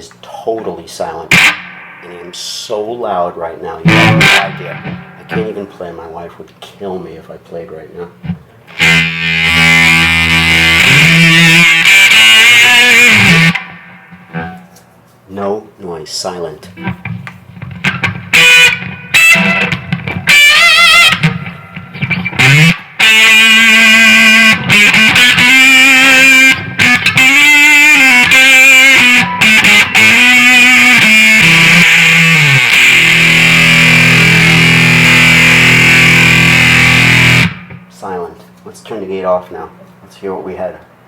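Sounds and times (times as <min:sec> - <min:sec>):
distorted electric guitar: 0:01.3 - 0:02.8, 0:03.4 - 0:06.2, 0:08.2 - 0:14.8, 0:16.8 - 0:37.9.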